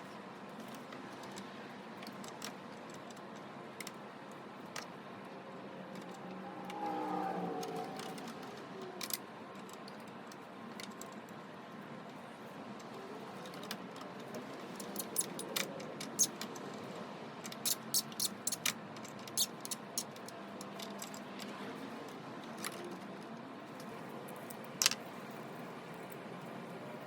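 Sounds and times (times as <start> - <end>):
metal parts clicking and tapping: 13.5 - 21.5.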